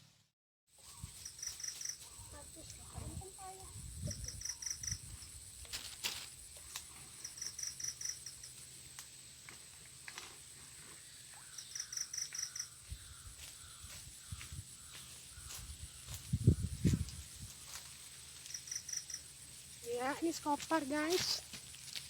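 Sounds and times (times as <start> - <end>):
high insect drone: 0.8 - 22.0
rapid high chirps: 4.0 - 5.2, 11.5 - 12.8, 18.5 - 19.4.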